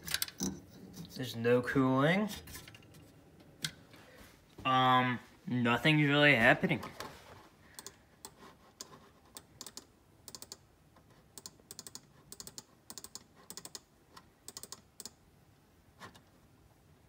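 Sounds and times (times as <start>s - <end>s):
typing on a keyboard: 7.8s - 10.6s, 11.4s - 13.9s, 14.5s - 15.2s.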